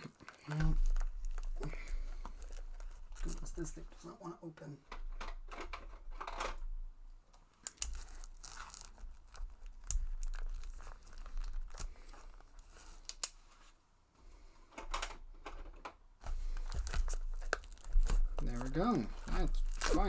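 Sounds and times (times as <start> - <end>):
plastic wrapper crinkling: 0.0 - 4.1, 7.3 - 13.8, 16.3 - 20.0
wrapper tearing scrapes: 7.6 - 13.6, 16.6 - 20.0.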